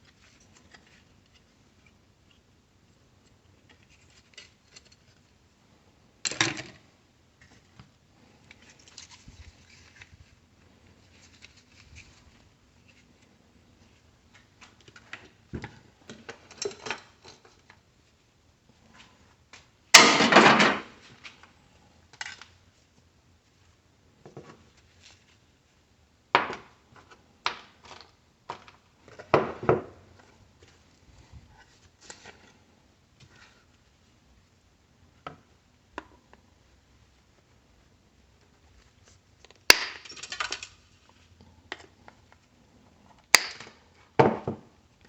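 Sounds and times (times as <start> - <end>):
tools and parts clattering: 16.1 - 17.7, 39.7 - 40.8.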